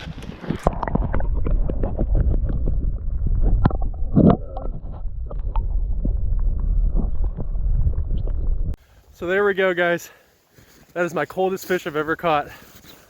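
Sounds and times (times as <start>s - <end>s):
water sloshing and splashing: 0.0s - 8.4s.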